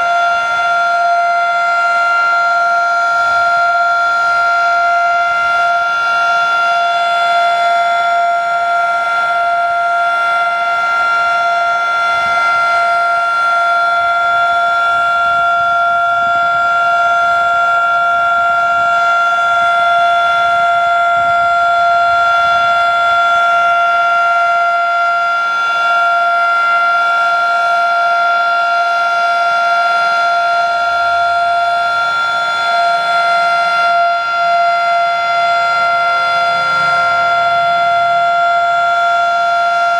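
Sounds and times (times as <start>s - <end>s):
mechanical siren wailing: 0.0s - 39.9s.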